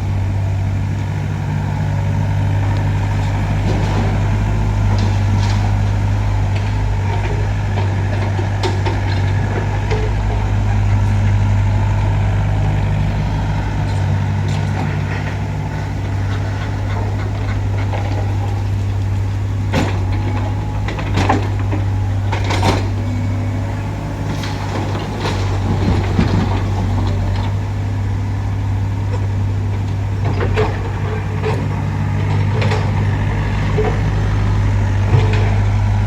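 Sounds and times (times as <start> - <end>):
heavy diesel engine running: 0.0 - 36.0.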